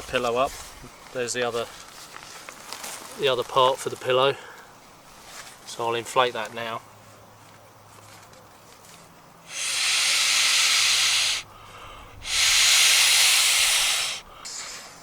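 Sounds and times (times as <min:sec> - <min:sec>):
breath blown into valve: 0:09.5 - 0:11.5, 0:12.2 - 0:15.0.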